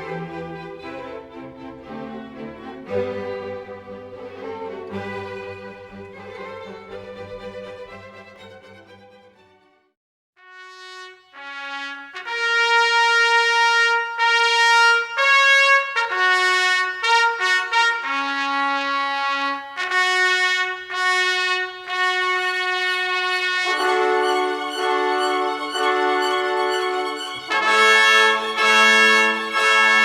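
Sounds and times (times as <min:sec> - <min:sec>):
solo trumpet slow melody: 0:10.4 - 0:30.0.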